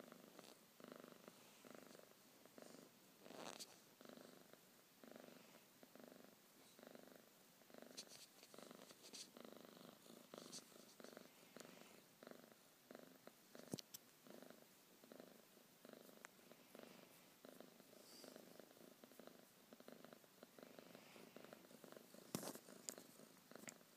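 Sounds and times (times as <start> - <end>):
cat purring: 0.0 - 23.9.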